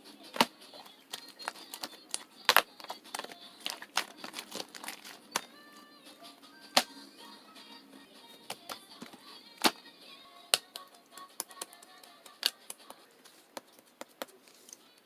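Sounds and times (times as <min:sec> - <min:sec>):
irregular crinkling: 0:00.4 - 0:05.9, 0:10.5 - 0:15.0.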